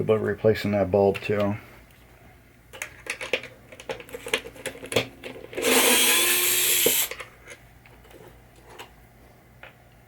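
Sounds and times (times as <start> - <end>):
power driver running: 5.6 - 7.1.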